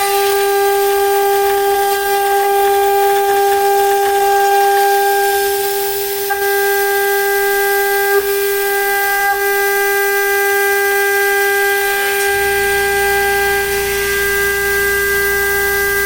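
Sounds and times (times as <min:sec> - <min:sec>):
spindle high-pitched whine: 0:00.0 - 0:16.0
low hum: 0:11.9 - 0:16.0.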